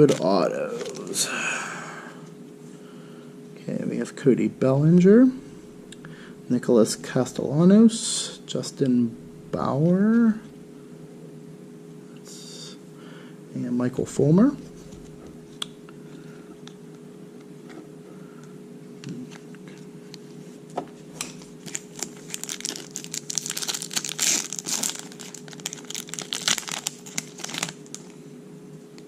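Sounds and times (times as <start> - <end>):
low steady hum: 0.0 - 29.0
foil wrapper crackling: 21.2 - 28.2.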